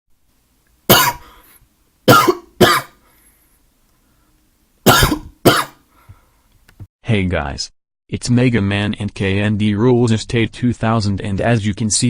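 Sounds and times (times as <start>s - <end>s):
person coughing: 0.9s - 1.4s, 2.1s - 3.0s, 4.9s - 5.8s.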